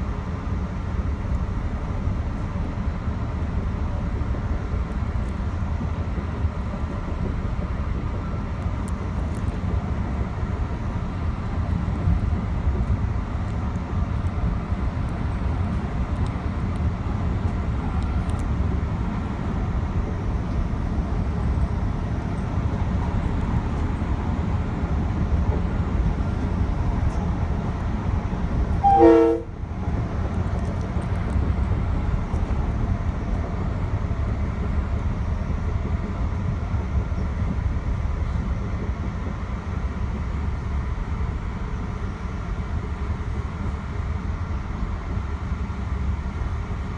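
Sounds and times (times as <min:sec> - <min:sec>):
train wheels rumbling: 0:00.1 - 0:46.9
train horn blast: 0:28.8 - 0:29.6.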